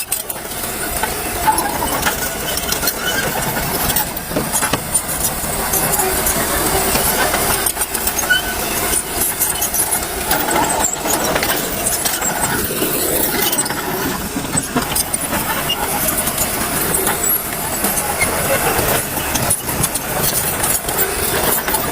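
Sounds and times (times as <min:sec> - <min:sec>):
dump truck running: 0:00.0 - 0:21.9.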